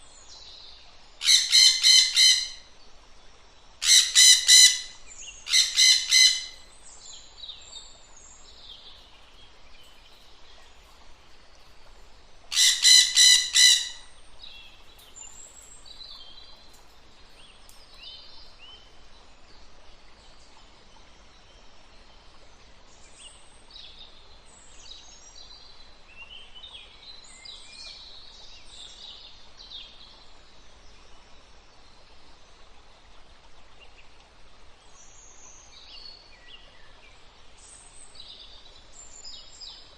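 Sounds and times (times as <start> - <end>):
birds chirping and twittering: 0.2 - 2.7, 3.8 - 19.3.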